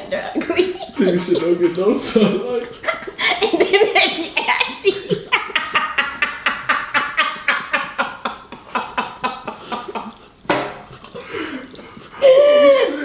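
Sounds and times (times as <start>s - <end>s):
people laughing hard: 0.1s - 10.2s.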